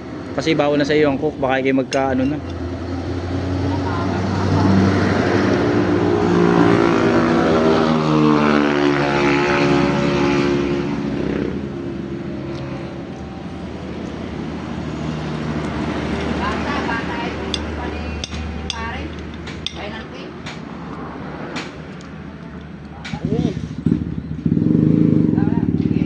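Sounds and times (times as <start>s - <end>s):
passing engine drone: 2.4s - 19.1s.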